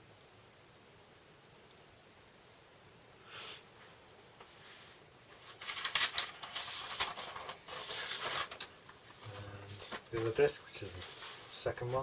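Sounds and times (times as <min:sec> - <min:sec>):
paper record sleeves rustling: 0:03.8 - 0:12.0.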